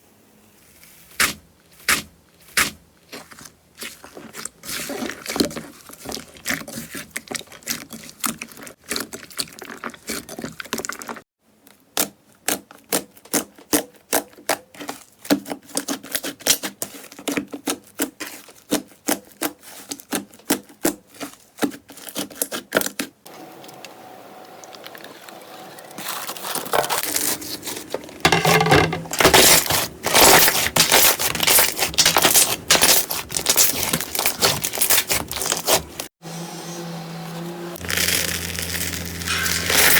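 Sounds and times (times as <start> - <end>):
slime squished by hand: 29.3 - 36.0.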